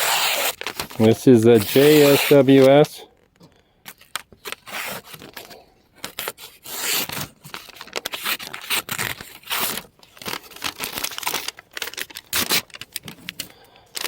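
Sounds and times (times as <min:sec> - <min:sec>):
handling scraping and rustling: 0:00.0 - 0:03.0.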